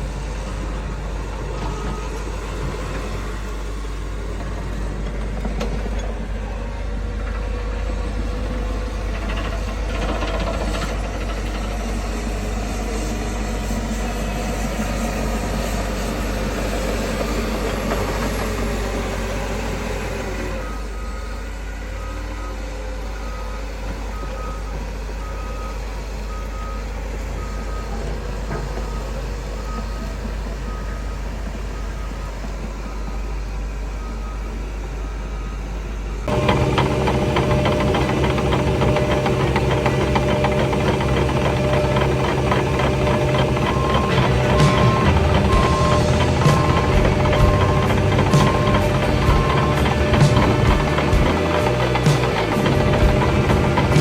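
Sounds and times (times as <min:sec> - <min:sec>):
diesel engine running under load: 0:00.0 - 0:54.0
reversing alarm beeping: 0:15.6 - 0:54.0.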